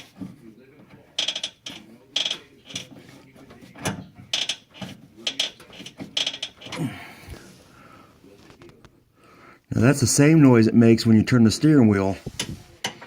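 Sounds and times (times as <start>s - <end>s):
steering rack creaking and knocking: 0.0s - 6.9s.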